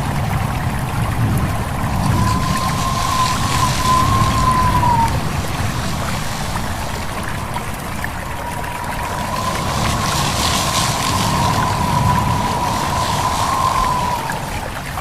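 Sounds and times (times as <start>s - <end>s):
low rumble: 0.0s - 15.0s
rush of wind: 0.0s - 15.0s
rustling leaves: 0.0s - 15.0s
stream water: 0.0s - 15.0s
wind whistling: 0.0s - 15.0s.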